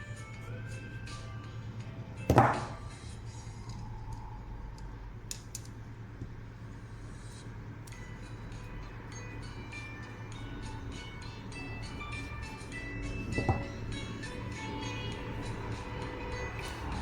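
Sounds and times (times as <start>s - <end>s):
faint background music: 0.0s - 17.0s.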